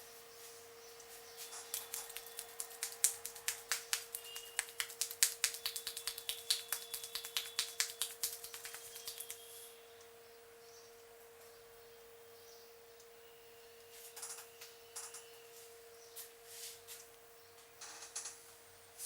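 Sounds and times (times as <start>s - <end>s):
faint hum: 0.0s - 19.0s
fingers snapping and clicking: 1.5s - 9.4s.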